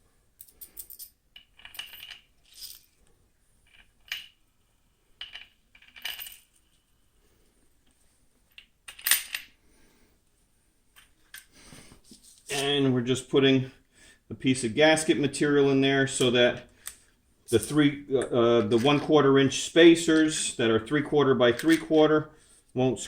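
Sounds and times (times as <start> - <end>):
small steel parts clinking: 0.4 - 3.0, 5.2 - 6.8, 8.5 - 9.5.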